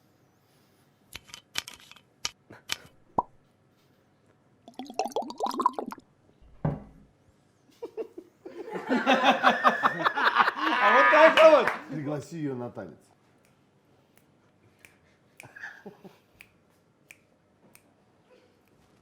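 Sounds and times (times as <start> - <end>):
people laughing: 7.8 - 12.0.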